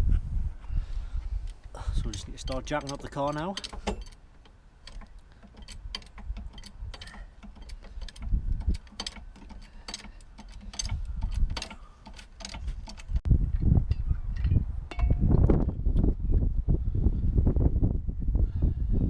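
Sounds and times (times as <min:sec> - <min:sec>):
car jack clicking: 0:02.1 - 0:13.2.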